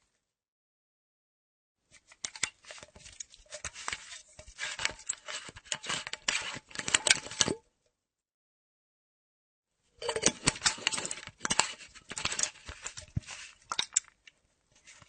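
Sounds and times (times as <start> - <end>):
metal flask cap clicking and scraping: 2.0 - 7.6, 10.0 - 15.0.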